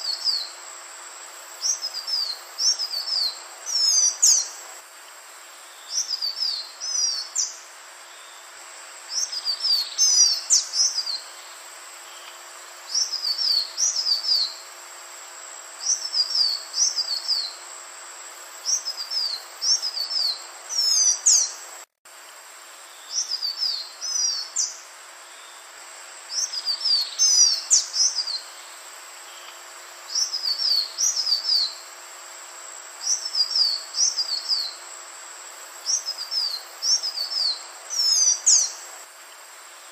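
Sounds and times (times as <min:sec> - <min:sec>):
bird singing: 0:00.0 - 0:00.6, 0:01.6 - 0:04.6, 0:05.7 - 0:08.5, 0:09.1 - 0:14.7, 0:15.8 - 0:17.6, 0:18.6 - 0:21.6, 0:22.9 - 0:25.7, 0:26.3 - 0:31.9, 0:33.0 - 0:34.8, 0:35.8 - 0:38.8
background hiss: 0:00.0 - 0:39.9.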